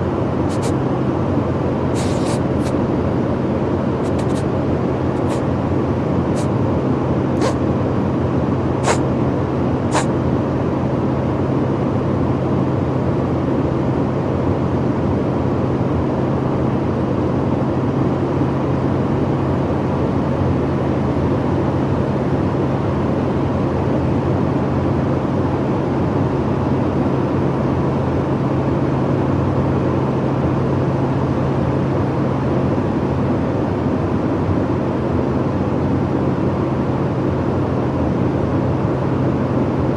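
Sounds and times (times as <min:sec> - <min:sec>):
man sniffling: 0:00.5 - 0:00.7, 0:02.0 - 0:02.8, 0:04.0 - 0:04.4, 0:05.2 - 0:05.4, 0:07.4 - 0:07.6, 0:09.9 - 0:10.1.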